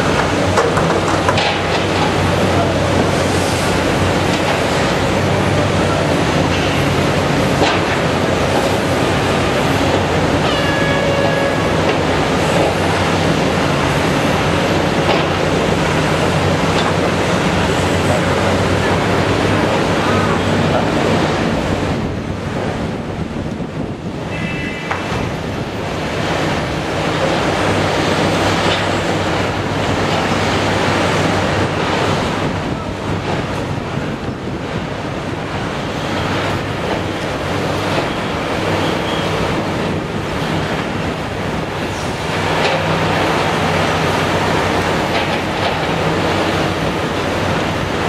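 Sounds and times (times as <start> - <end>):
excavator diesel engine under load: 0.0 - 24.3, 24.9 - 48.0
wind on microphone: 16.1 - 48.0.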